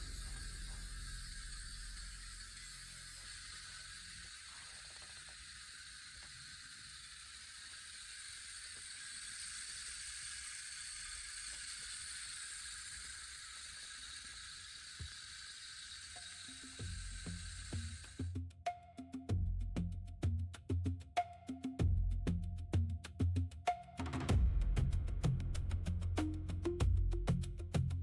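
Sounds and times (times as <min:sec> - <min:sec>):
rain stick trickling: 0:00.0 - 0:18.3.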